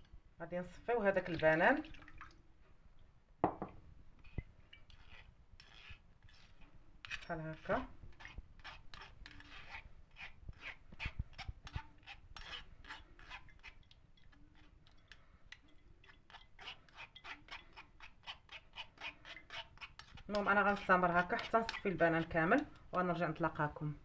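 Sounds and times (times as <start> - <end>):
scraping banana through a sieve: 4.2 - 13.8, 16.3 - 23.1.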